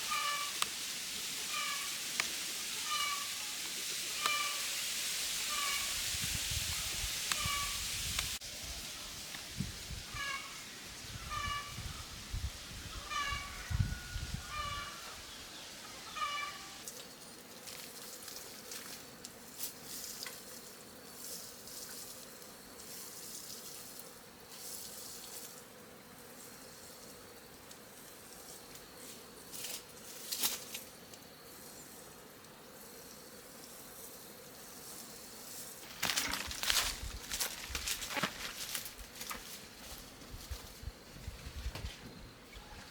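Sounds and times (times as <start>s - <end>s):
rustling: 35.5s - 42.0s.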